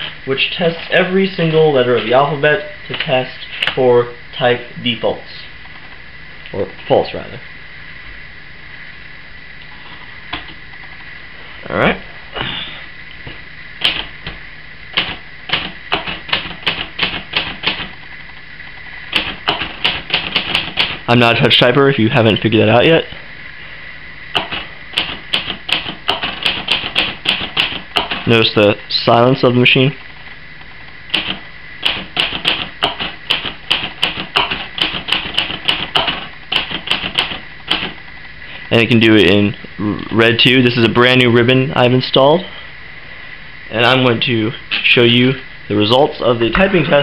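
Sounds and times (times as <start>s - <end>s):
manual typewriter key strikes: 24.4s - 28.3s, 31.1s - 38.0s.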